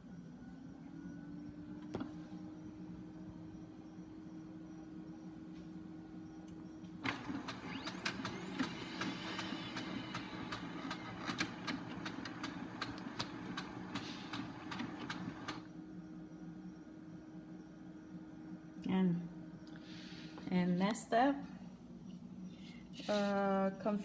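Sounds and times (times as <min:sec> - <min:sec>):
printer motors whirring and clicking: 0:07.0 - 0:15.7.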